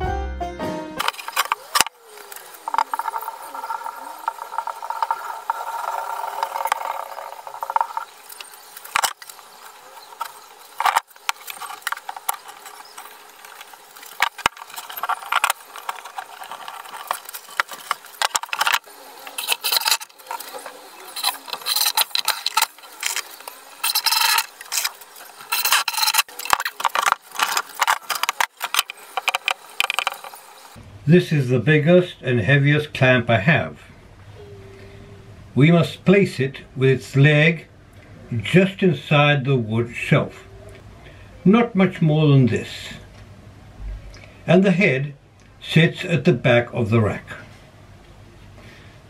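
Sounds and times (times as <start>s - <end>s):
knocks clicks and rattles: 1.0s - 30.7s
scraping: 1.0s - 30.8s.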